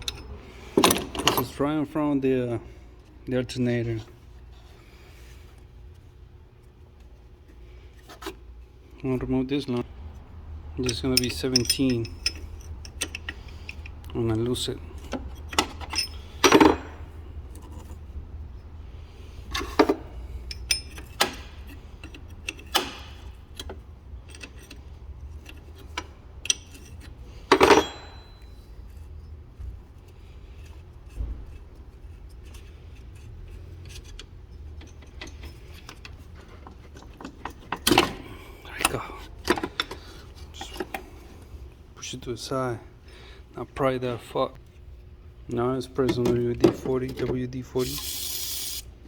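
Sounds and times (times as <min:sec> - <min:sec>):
metal hand tools clinking: 0:10.8 - 0:14.0.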